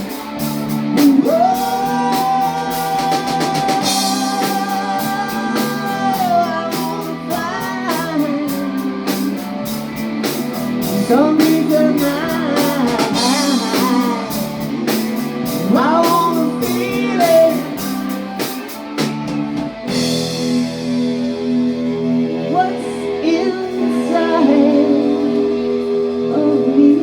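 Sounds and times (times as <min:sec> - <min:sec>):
live rock band playing: 0:00.0 - 0:27.0
man singing wordless notes: 0:00.7 - 0:09.8, 0:10.7 - 0:18.8, 0:22.5 - 0:25.7.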